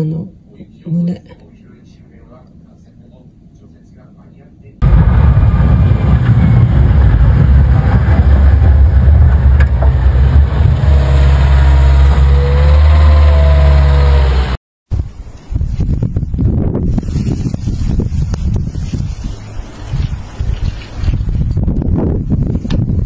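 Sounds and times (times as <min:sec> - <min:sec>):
motor engine running: 0:04.8 - 0:14.6.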